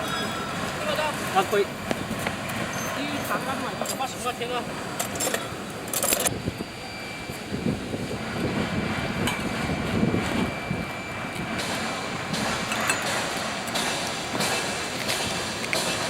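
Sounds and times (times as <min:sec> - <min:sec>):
drilling rig running: 0:00.0 - 0:16.0
sharp metal knocks: 0:11.6 - 0:16.0.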